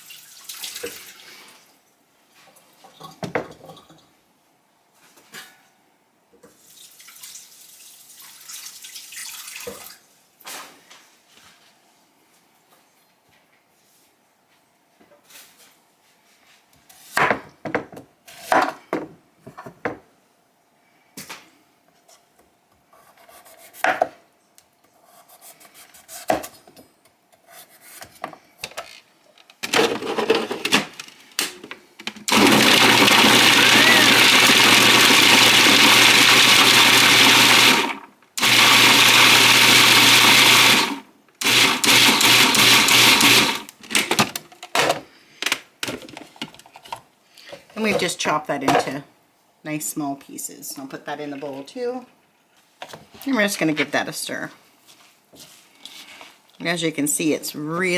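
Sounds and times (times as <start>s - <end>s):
food chopper motor: 32.3s - 43.8s.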